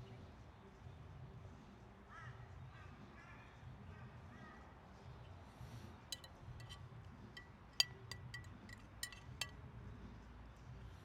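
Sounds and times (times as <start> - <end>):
cutlery clinking against a plate: 6.1 - 9.6.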